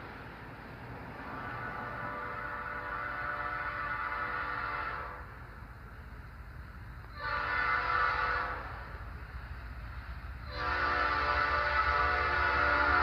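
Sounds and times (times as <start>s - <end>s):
locomotive air horn blasts: 1.2s - 5.3s, 7.1s - 9.0s, 10.4s - 13.0s.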